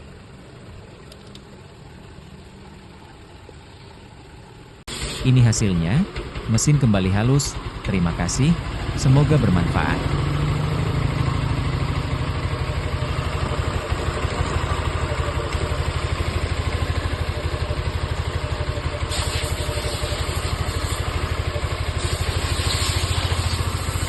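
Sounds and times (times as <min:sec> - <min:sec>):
scooter engine idling: 0:00.0 - 0:24.0
light hiss: 0:19.0 - 0:21.2, 0:21.8 - 0:24.0.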